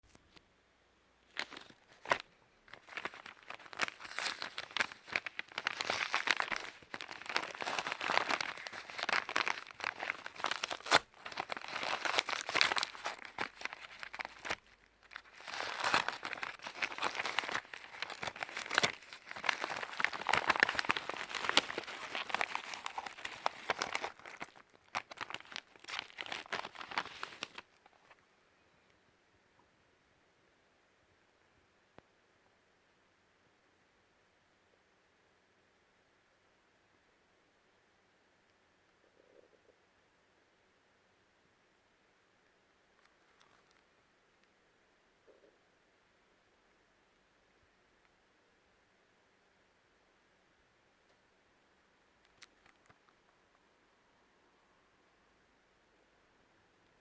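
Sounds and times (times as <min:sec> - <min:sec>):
packaging crinkling and tearing: 0:01.3 - 0:28.2.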